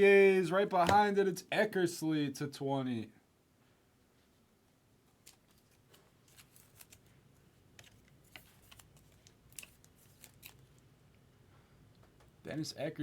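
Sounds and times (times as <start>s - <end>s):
trading cards being handled: 5.1s - 7.1s, 7.7s - 10.8s.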